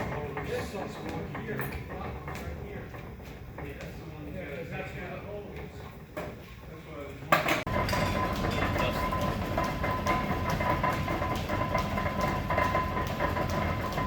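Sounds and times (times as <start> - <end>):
lathe whining: 7.7 - 14.0.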